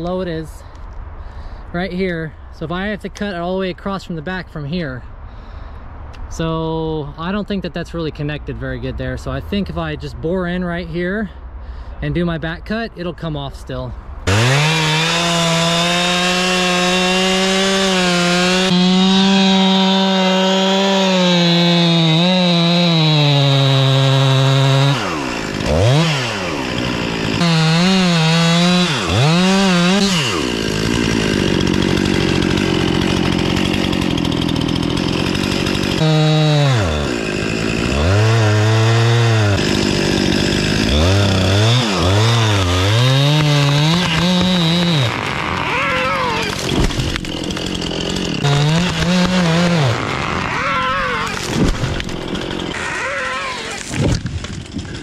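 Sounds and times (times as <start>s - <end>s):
chainsaw cutting wood: 14.2s - 55.0s.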